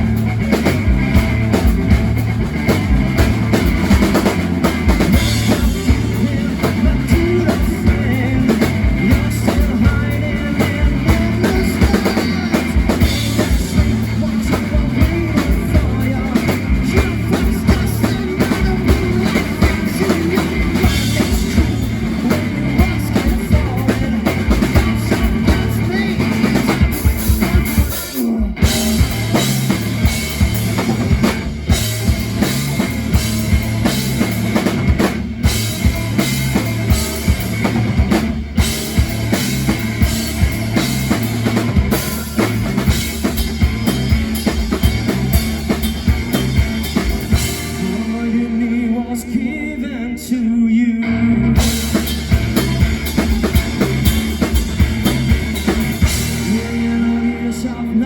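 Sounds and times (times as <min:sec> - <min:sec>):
drum kit beat: 0:00.0 - 0:49.0, 0:51.6 - 0:58.0
rock band playing: 0:00.0 - 0:58.0.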